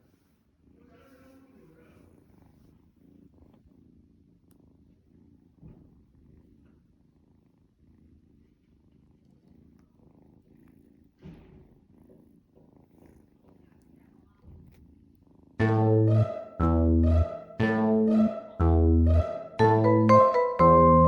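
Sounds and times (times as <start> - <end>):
kitten purring: 0.0 - 16.0.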